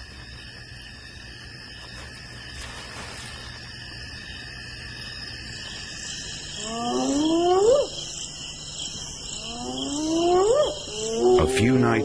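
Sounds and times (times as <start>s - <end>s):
crickets chirping: 0.0s - 12.0s
hyena whooping: 9.4s - 12.0s.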